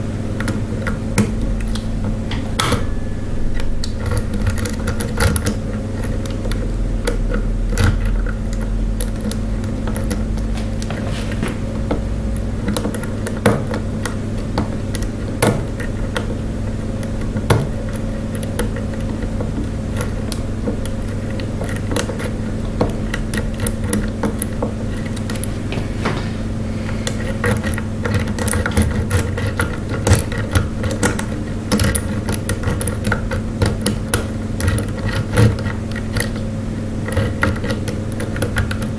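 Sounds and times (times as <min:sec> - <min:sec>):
low mechanical hum: 0:00.0 - 0:38.9
lock pick clicking and scraping: 0:03.5 - 0:10.5, 0:17.0 - 0:25.5, 0:27.0 - 0:38.9.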